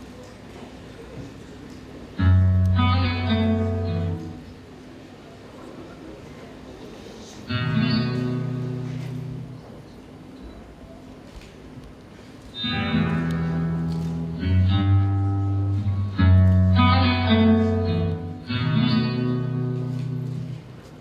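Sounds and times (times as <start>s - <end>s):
long held instrumental chords: 2.2s - 4.6s, 12.6s - 20.9s.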